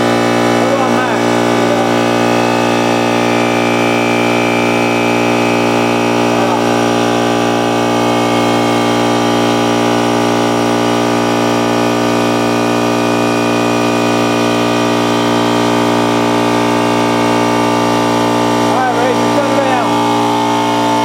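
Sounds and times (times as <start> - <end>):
air compressor droning: 0.0 - 21.0.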